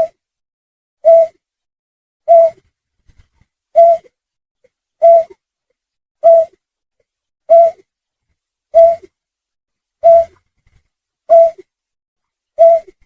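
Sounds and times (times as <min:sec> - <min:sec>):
bird lure call: 0:01.0 - 0:01.4, 0:02.3 - 0:02.6, 0:03.8 - 0:04.1, 0:05.0 - 0:05.4, 0:06.2 - 0:06.6, 0:07.5 - 0:07.8, 0:08.8 - 0:09.1, 0:10.0 - 0:10.4, 0:11.3 - 0:11.6, 0:12.6 - 0:13.0.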